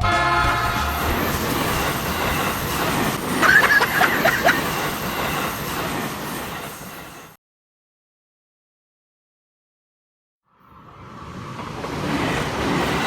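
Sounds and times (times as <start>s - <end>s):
train wheels rumbling on rail: 0.5s - 7.4s, 10.8s - 13.0s.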